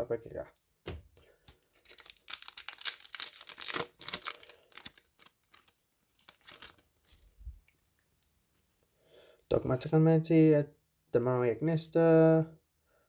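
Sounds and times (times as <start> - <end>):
cards rustling: 1.4 - 7.4
foil wrapper tearing and crinkling: 1.5 - 6.9.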